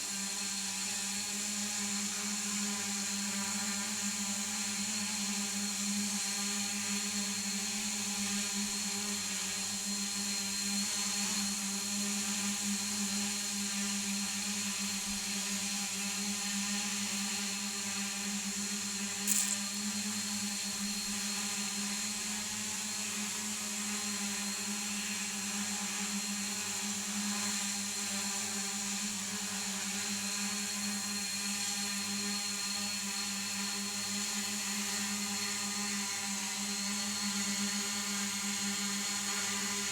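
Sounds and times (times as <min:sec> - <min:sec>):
short click: 0:19.3 - 0:19.6.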